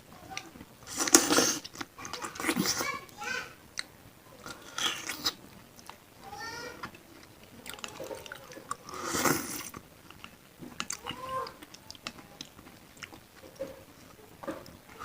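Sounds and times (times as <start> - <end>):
slurp of broth: 0.9 - 1.7, 8.8 - 9.7
chewing with wet clicks: 3.8 - 6.0, 6.8 - 15.0.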